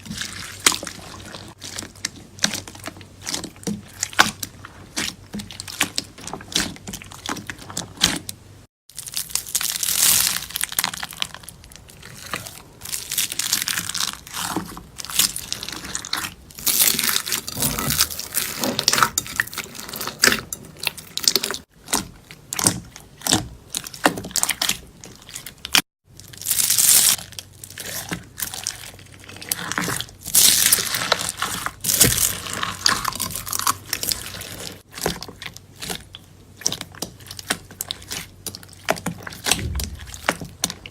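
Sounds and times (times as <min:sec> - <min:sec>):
slime crackling and popping: 0:08.9 - 0:36.0, 0:36.6 - 0:40.9.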